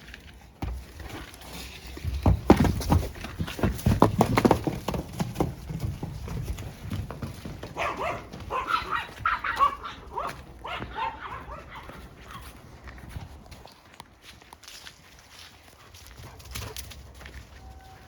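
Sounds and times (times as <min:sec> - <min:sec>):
horse hooves clip-clopping: 0:00.0 - 0:18.0
dog yapping and whining: 0:07.8 - 0:12.4.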